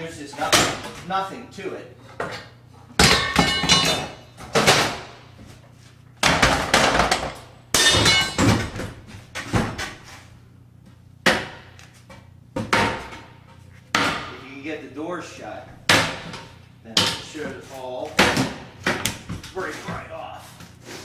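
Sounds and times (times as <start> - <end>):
hard bangs on cabinet: 15.9 - 16.3.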